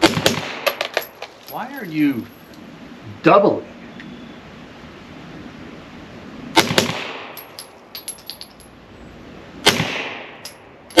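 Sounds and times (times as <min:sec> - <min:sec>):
suppressed pistol shots: 0:00.0 - 0:01.0, 0:06.6 - 0:07.4, 0:09.6 - 0:11.0
light metallic clinks: 0:07.4 - 0:08.8.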